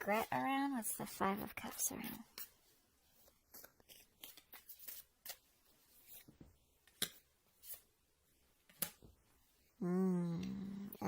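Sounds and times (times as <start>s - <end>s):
cards clicking and slapping: 3.5s - 5.4s, 6.8s - 7.8s, 8.7s - 9.0s.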